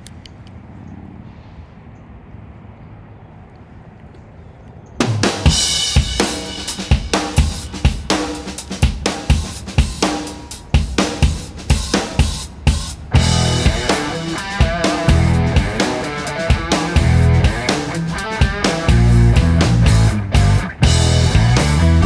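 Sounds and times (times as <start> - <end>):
music with drum-kit beat: 5.0 - 22.0.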